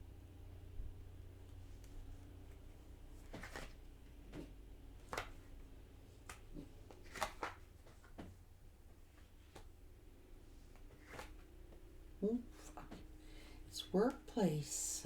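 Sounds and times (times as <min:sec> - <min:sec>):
low steady hum: 0:00.0 - 0:15.0
cards sliding and slapping: 0:03.2 - 0:05.5, 0:06.2 - 0:08.3, 0:10.7 - 0:11.5.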